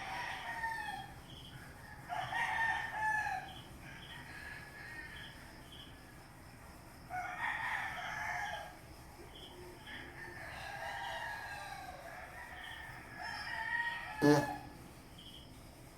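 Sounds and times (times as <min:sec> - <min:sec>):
roosters crowing: 0:00.0 - 0:05.8, 0:07.1 - 0:08.9, 0:09.8 - 0:14.8.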